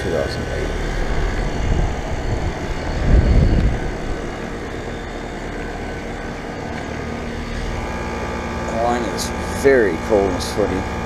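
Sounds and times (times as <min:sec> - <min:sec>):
low rumble: 0:00.0 - 0:08.8
air conditioner unit running: 0:00.0 - 0:11.0.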